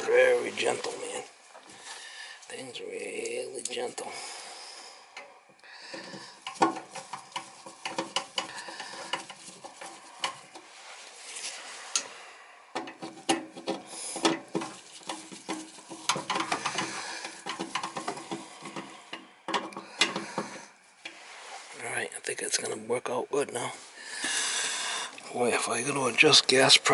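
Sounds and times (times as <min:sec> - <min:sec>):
clicks and taps of metal parts: 0:05.9 - 0:10.6, 0:12.7 - 0:21.2.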